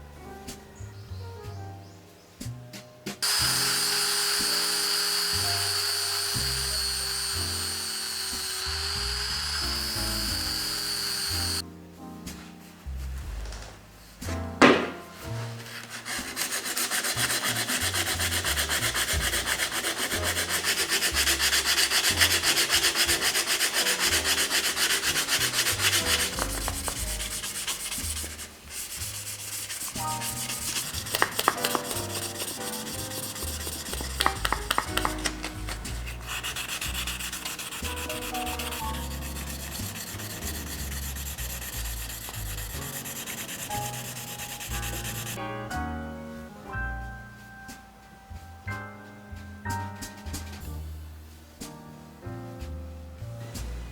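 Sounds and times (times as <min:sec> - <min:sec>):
sanding metal silencer: 0:03.2 - 0:11.6, 0:15.6 - 0:45.4.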